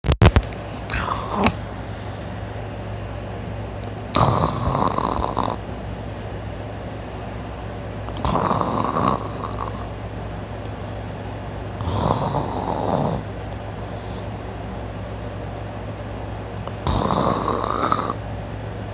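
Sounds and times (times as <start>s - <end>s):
steady low hum: 0.2s - 18.9s
person snoring: 0.9s - 1.7s, 4.1s - 5.6s, 8.2s - 9.9s, 11.8s - 13.3s, 16.7s - 18.2s.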